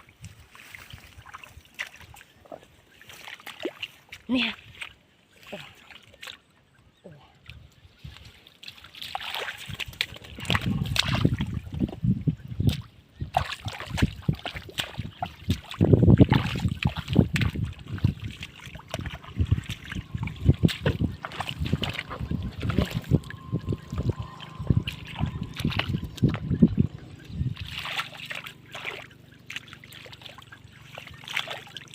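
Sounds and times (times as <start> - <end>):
hands splashing in muddy water: 8.1 - 12.0, 12.6 - 31.9.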